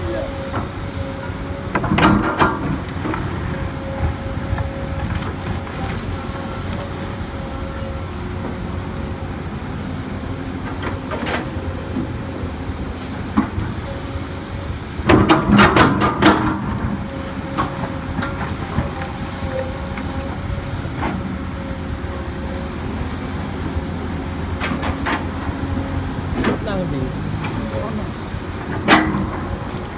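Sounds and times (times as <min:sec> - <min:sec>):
excavator diesel engine running: 0:00.0 - 0:29.9
metallic knocks and clanks: 0:01.7 - 0:03.2, 0:28.7 - 0:29.8.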